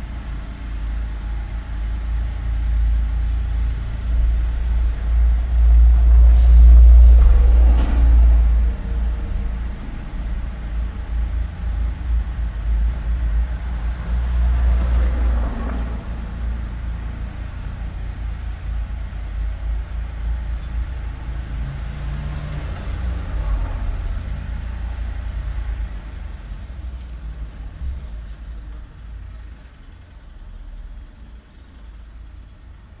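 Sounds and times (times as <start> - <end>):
deep traffic rumble: 0.0 - 33.0
vehicles passing: 0.0 - 33.0.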